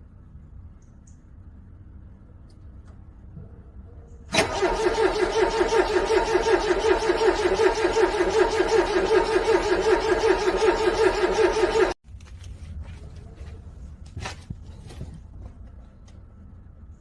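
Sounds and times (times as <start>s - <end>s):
starter motor cranking engine: 4.3s - 12.0s.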